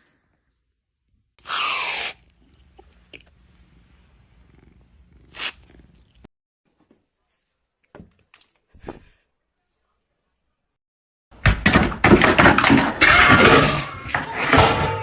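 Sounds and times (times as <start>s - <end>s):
knocks and bangs clattering: 11.4s - 15.0s.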